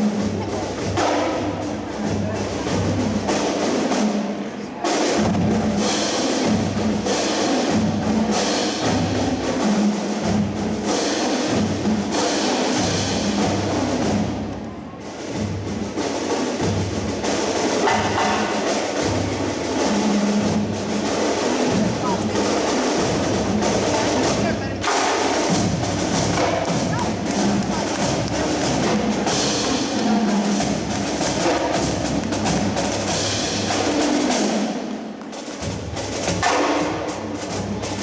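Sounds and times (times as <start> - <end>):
marching band drums: 0.0 - 38.0.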